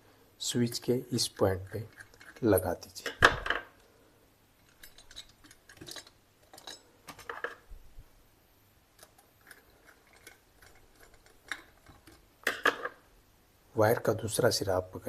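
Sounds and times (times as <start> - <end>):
small clicks and scrapes: 1.7 - 2.7, 4.6 - 7.7, 9.0 - 13.0.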